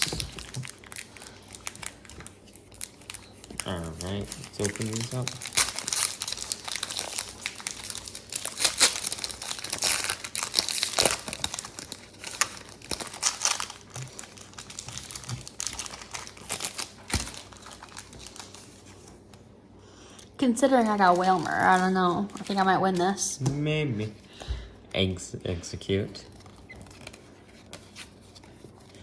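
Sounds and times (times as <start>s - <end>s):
wrappers crinkling and tearing: 0.0s - 19.4s, 20.6s - 23.4s, 25.9s - 29.0s.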